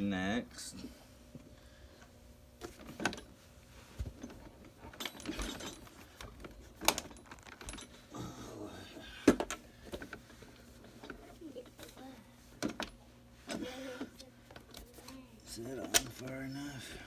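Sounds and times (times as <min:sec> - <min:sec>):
light rattling and handling noise: 0:01.3 - 0:08.1, 0:08.8 - 0:17.0
metal hardware clinking: 0:04.2 - 0:06.0, 0:06.8 - 0:08.0.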